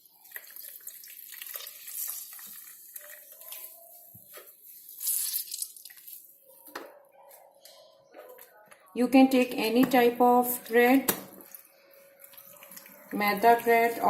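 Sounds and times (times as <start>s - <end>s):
water splashing and dripping: 0.0s - 3.7s.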